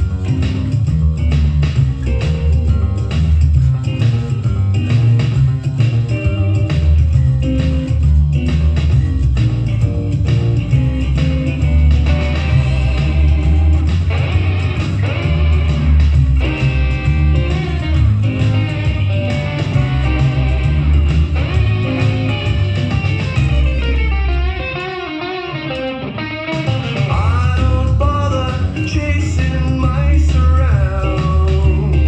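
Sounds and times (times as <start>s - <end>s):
bending guitar lick: 0.0s - 32.0s
electric bass line: 0.0s - 32.0s
rockabilly song with electric guitar: 0.0s - 32.0s.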